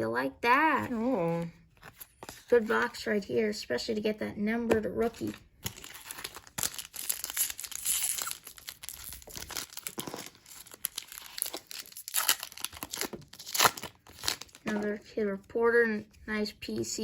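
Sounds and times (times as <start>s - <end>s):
plastic wrapper crinkling and tearing: 5.1s - 15.0s.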